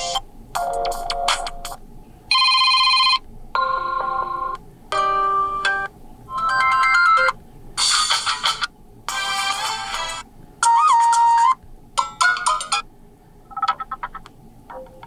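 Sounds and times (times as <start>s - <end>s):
phone electronic melodies and chimes: 3.6s - 7.4s.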